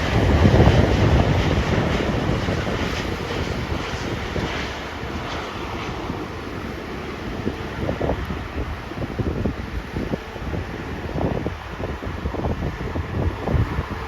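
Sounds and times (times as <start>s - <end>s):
jet airliner passing overhead: 0.0s - 14.0s
wind buffeting microphone: 0.0s - 14.0s.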